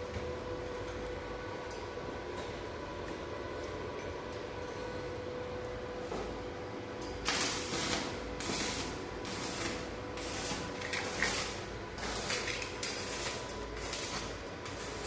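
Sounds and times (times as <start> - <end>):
hissing crackling metalwork bursts: 7.2 - 15.0.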